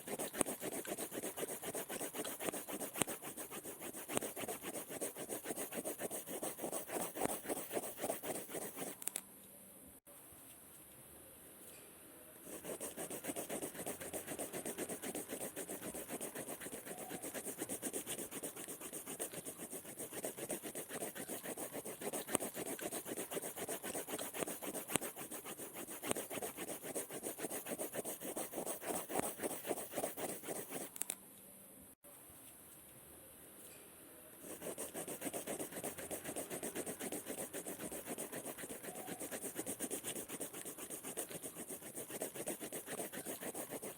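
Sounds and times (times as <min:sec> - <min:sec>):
scribbling on paper: 0:00.0 - 0:09.0, 0:12.5 - 0:30.9, 0:34.4 - 0:43.9.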